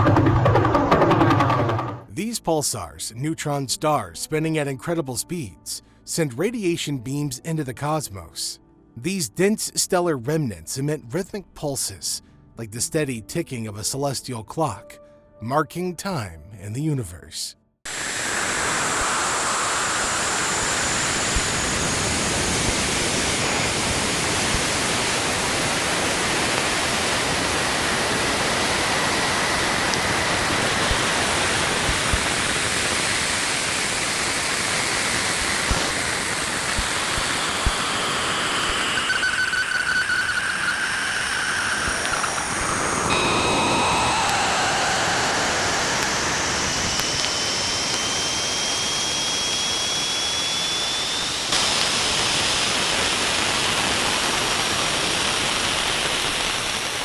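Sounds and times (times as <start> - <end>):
static hiss: 17.9 - 57.0
thin whistling tones sliding down: 38.4 - 51.5.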